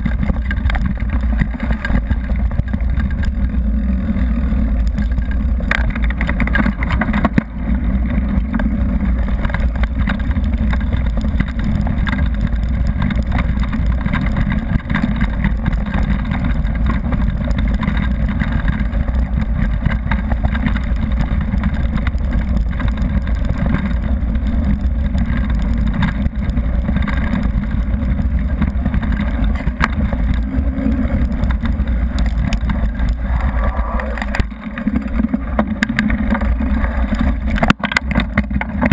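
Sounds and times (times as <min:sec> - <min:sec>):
tyre noise on gravel: 0:00.0 - 0:38.9
wind rumble on microphone: 0:00.0 - 0:38.9.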